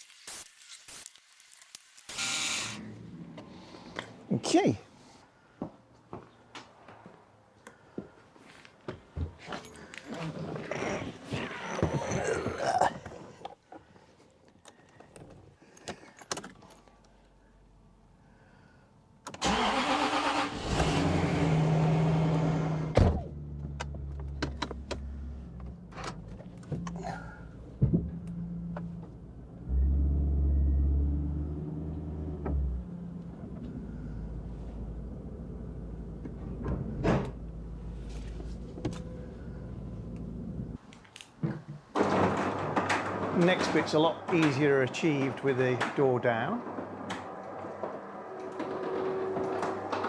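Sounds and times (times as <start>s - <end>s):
car engine starting and idling: 19.3s - 27.0s.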